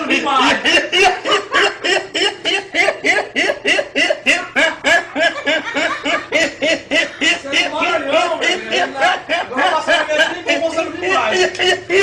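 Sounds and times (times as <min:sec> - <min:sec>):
person laughing high-pitched: 0:00.0 - 0:12.0.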